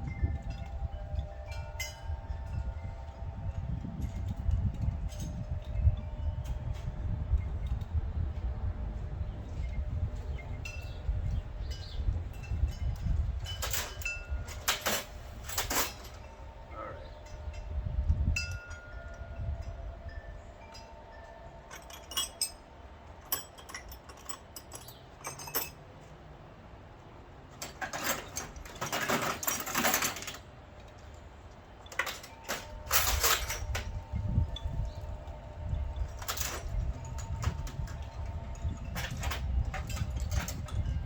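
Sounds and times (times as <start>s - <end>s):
ringing metallic tones: 0.0s - 7.7s, 10.3s - 25.8s, 31.9s - 41.0s
metal clinking and clattering: 11.7s - 16.5s, 21.6s - 25.8s, 27.5s - 31.2s, 31.8s - 35.0s, 35.9s - 41.0s.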